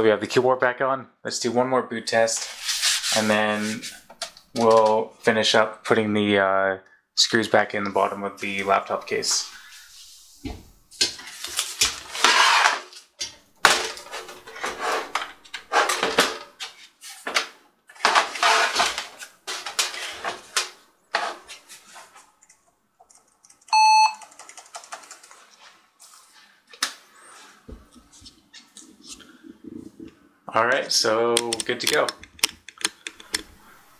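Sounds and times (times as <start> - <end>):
short electronic beep: 23.7 - 24.2.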